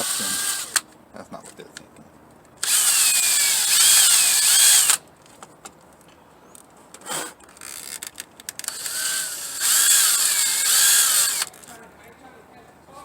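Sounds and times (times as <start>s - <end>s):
power drill running: 0.0s - 0.8s, 2.6s - 5.0s, 8.7s - 11.5s.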